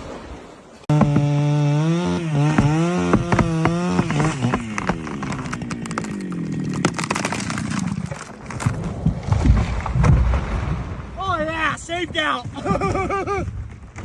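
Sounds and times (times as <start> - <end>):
chainsaw cutting wood: 0.9 - 9.9
wood cracking: 0.9 - 14.0.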